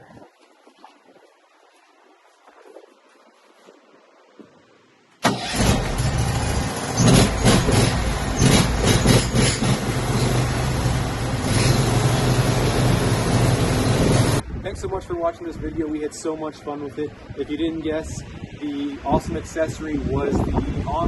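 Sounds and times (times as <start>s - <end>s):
gasoline engine running loud: 5.3s - 14.4s.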